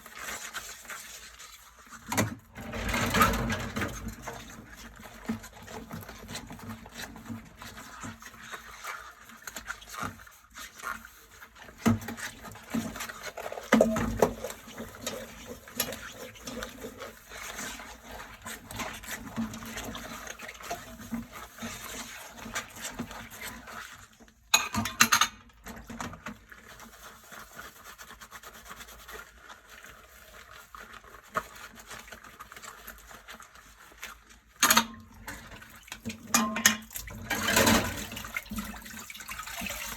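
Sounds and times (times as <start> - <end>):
scrubbing dishes: 1.9 - 8.6, 11.6 - 23.9, 34.6 - 39.9
dishware clinking: 36.4 - 36.9.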